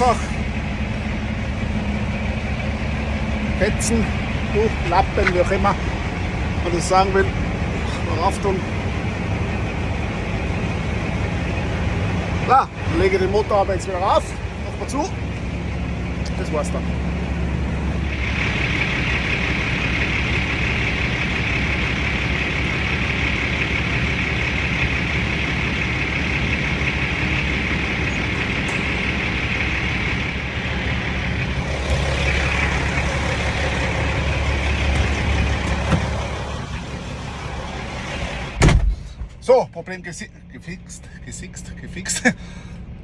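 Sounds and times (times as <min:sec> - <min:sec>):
truck engine drone: 0:00.0 - 0:43.0.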